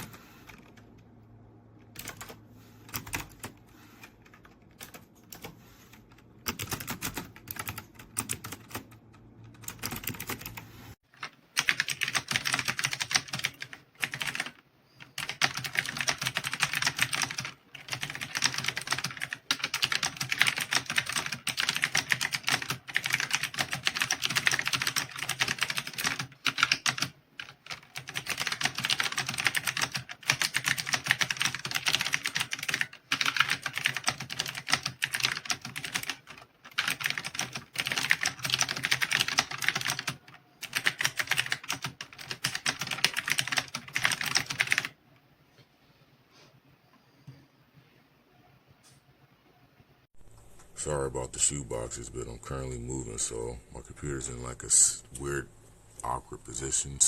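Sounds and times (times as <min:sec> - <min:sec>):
clicky mechanical keyboard typing: 0:01.8 - 0:45.0.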